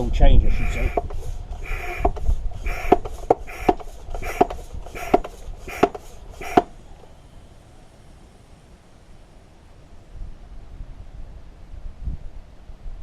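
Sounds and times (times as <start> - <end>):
hand pump suction hiss and click: 0.4 - 7.2.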